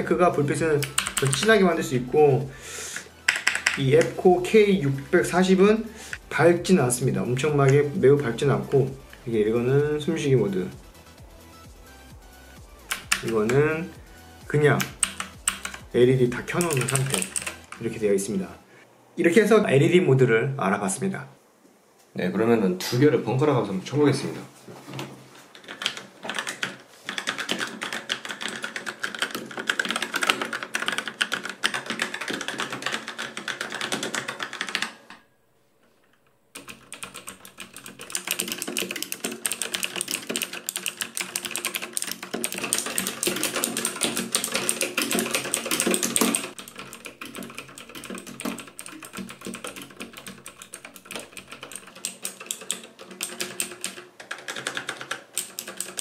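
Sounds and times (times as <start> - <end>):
fast typing on mechanical keyboards: 0.0 - 10.1, 12.8 - 14.0, 14.6 - 17.9, 25.5 - 35.2, 36.5 - 56.0.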